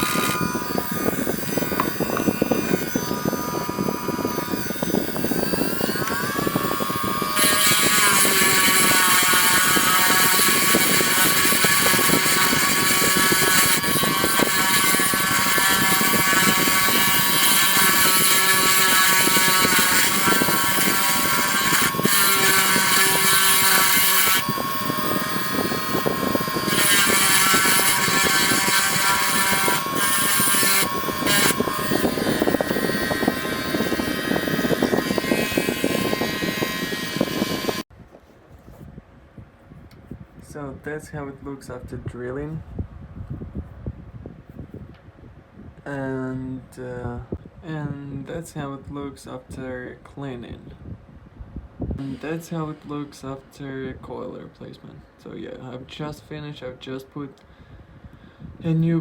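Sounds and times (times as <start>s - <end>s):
rotary drill whining: 0.0s - 37.9s.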